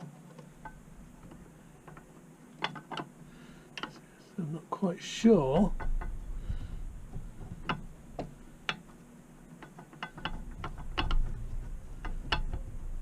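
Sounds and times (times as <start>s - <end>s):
metallic clicks of brake pads: 9.6s - 12.7s.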